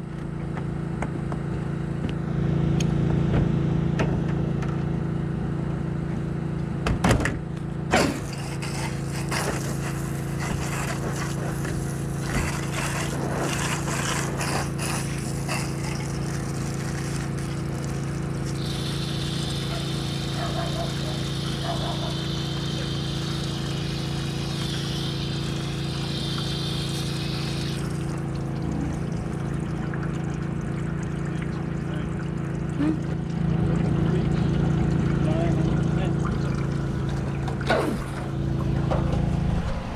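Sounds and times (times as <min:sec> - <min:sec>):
pressure washer spraying: 0:08.0 - 0:28.4.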